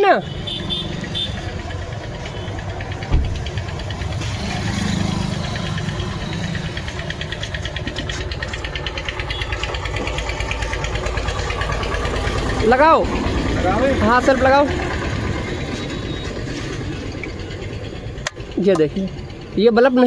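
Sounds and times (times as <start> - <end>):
engine idling with ticking: 0.0 - 20.0
sharp thump: 3.0 - 3.7.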